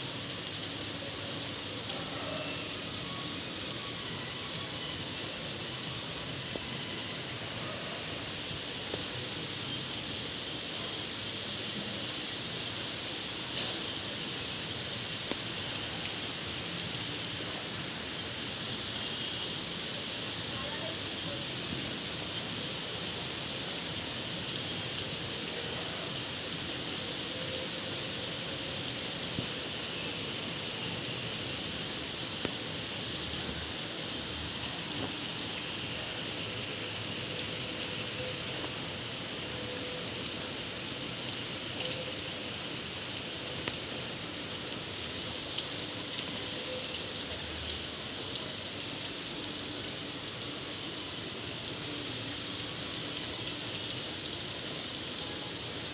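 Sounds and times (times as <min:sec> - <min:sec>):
raindrops ticking on surface: 0:00.0 - 0:10.8, 0:11.5 - 0:55.9
steady rain hiss: 0:00.0 - 0:55.9.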